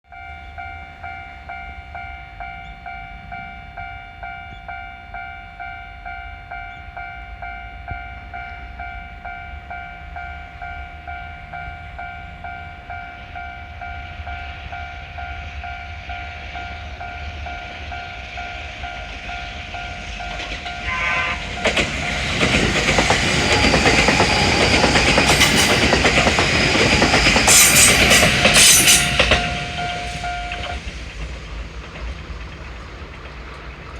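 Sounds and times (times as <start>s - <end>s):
railroad crossing warning bell: 0.0s - 31.3s
train horn: 14.1s - 22.2s, 26.7s - 30.8s
train wheels clattering over rail joints: 18.2s - 33.9s.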